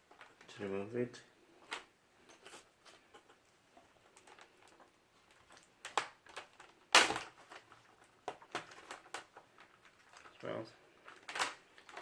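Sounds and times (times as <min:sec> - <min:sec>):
plastic crackling snap: 0:04.1 - 0:12.0
plastic laptop parts clicking: 0:05.4 - 0:10.3, 0:11.0 - 0:12.0.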